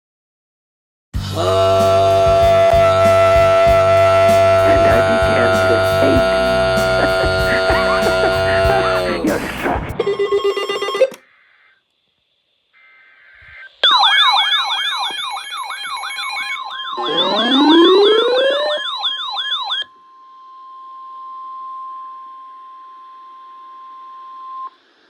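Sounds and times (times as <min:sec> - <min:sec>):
electronic sirens wailing: 0:01.4 - 0:11.2, 0:12.8 - 0:21.3
steady attention tone: 0:02.2 - 0:11.8, 0:12.8 - 0:24.3
digital header tones: 0:04.2 - 0:11.7, 0:12.8 - 0:19.9.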